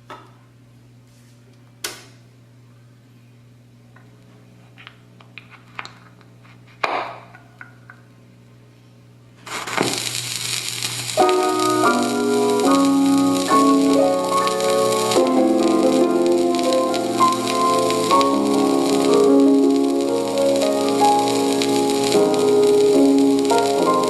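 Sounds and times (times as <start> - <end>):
low amplifier hum: 0.0 - 24.0
record needle hiss: 9.4 - 24.0
piano tune through speaker: 11.2 - 24.0.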